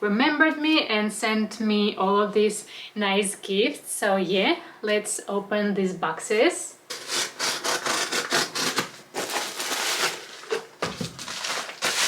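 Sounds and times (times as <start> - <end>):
card and paper rustling: 8.6 - 12.0.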